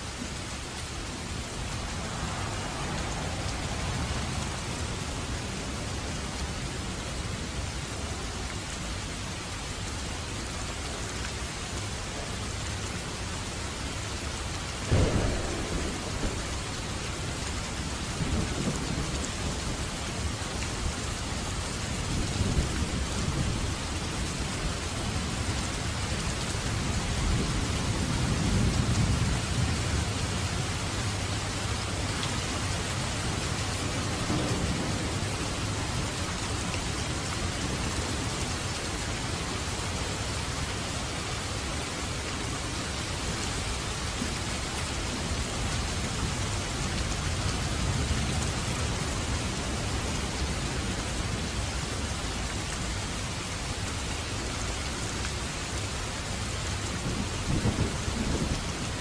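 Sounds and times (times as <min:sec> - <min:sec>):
steady rain: 0:00.0 - 0:59.0
thunder clap and rumbles: 0:00.8 - 0:06.5, 0:14.8 - 0:25.4, 0:26.0 - 0:40.9, 0:56.8 - 0:59.0.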